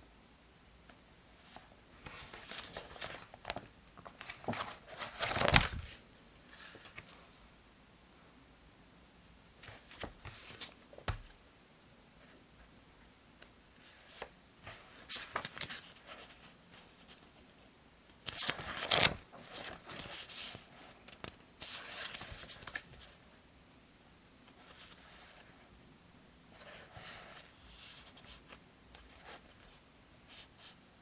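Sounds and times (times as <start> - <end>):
paper rustling and tearing: 4.2 - 6.0, 18.3 - 20.6.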